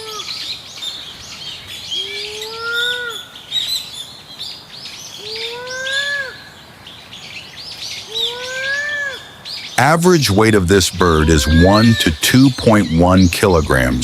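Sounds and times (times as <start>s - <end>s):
small birds chirping: 0.0s - 14.0s
pheasant calling: 10.6s - 14.0s.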